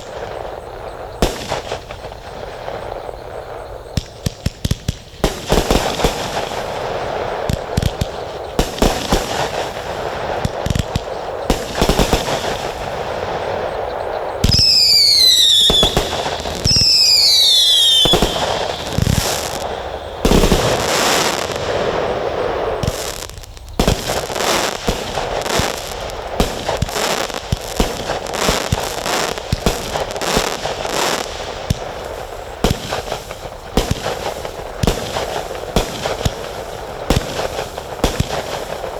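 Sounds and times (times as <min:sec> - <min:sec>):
fireworks bangs: 0:00.0 - 0:38.9
fireworks crackling: 0:00.0 - 0:38.9
falling whistling tones: 0:13.7 - 0:25.8.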